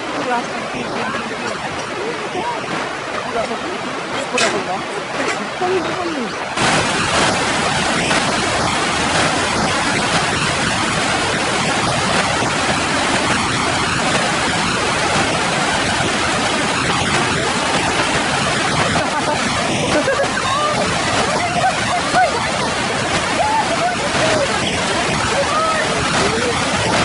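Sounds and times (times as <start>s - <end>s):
loud rushing noise: 1.0s - 27.0s.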